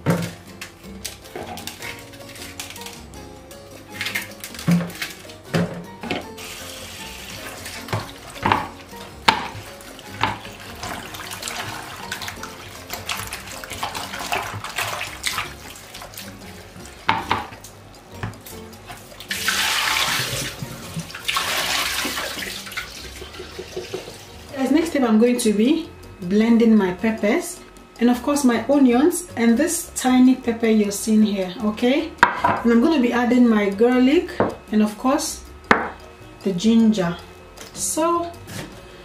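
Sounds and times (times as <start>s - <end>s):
kitchen tap running: 4.0s - 18.4s, 19.0s - 24.7s
produce and bowls knocking: 7.9s - 11.0s, 17.0s - 17.6s, 32.2s - 32.7s, 35.7s - 36.0s.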